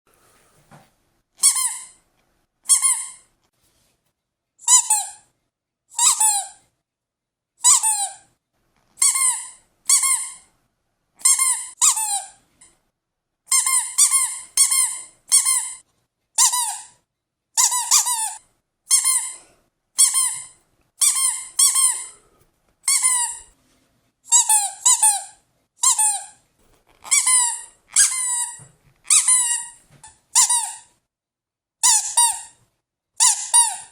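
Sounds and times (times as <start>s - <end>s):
rubber squeaky toy squeaking: 1.4s - 2.0s, 2.6s - 3.3s, 4.6s - 5.3s, 5.9s - 6.6s, 7.6s - 8.3s, 9.0s - 10.5s, 11.2s - 12.7s, 13.5s - 15.8s, 16.4s - 17.0s, 17.6s - 19.4s, 20.0s - 22.1s, 22.8s - 23.5s, 24.3s - 26.4s, 27.0s - 30.9s, 31.8s - 32.6s, 33.2s - 33.9s.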